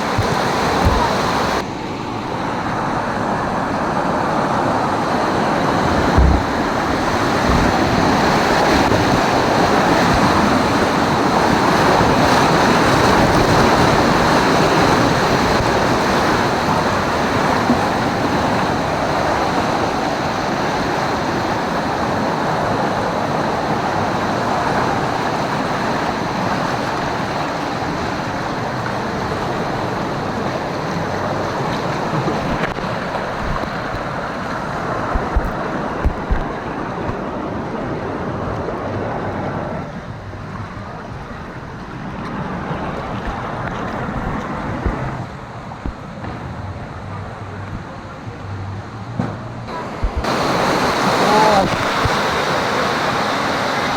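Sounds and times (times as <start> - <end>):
low bumps: 0.0 - 1.6, 5.7 - 9.3, 32.2 - 37.3, 49.0 - 50.5
churning splashing water: 0.0 - 48.4, 49.0 - 53.9.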